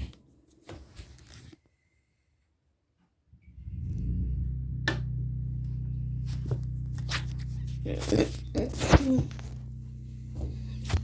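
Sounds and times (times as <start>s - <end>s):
generator engine humming: 3.7s - 11.0s.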